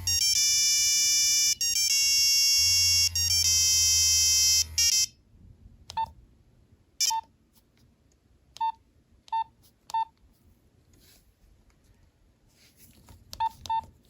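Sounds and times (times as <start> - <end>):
monophonic phone ringtone: 0.0 - 5.1
phone keypad beeps: 0.0 - 5.1, 5.9 - 6.1, 7.0 - 7.3, 13.4 - 13.9.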